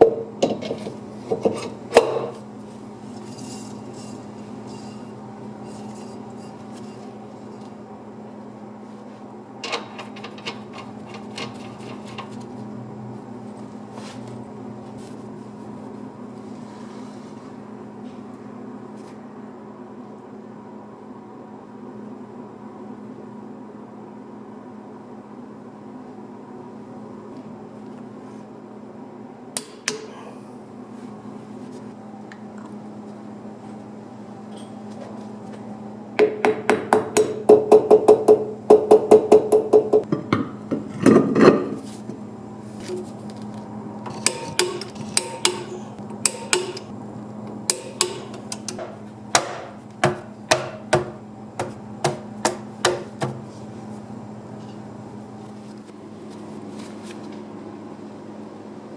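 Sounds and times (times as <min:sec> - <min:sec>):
steady low hum: 0:00.0 - 0:58.9
hammer striking metal: 0:44.2 - 0:46.9, 0:47.7 - 0:53.4.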